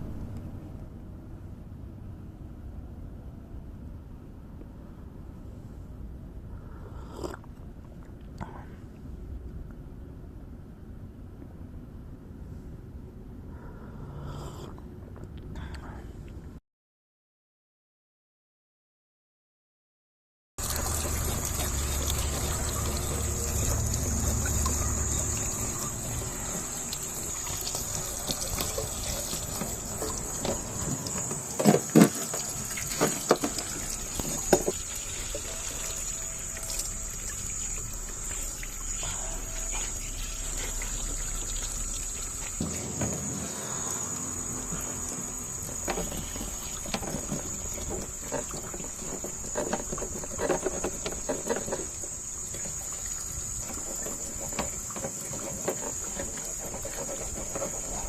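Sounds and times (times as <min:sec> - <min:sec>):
high-pitched whine: 0:00.0 - 0:01.6, 0:21.6 - 0:49.8
water running and trickling: 0:20.6 - 0:58.0.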